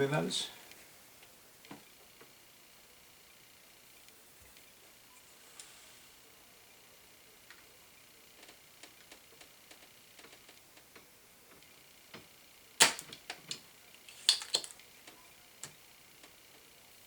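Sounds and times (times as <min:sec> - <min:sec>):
desoldering tools clicking and tapping: 0:08.4 - 0:16.4
loud sharp click: 0:12.8 - 0:13.2.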